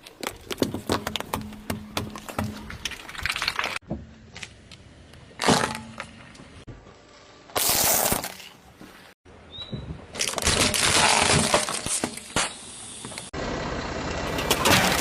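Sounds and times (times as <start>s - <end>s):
objects being crushed: 0.1s - 3.8s, 10.2s - 12.6s, 14.4s - 15.0s.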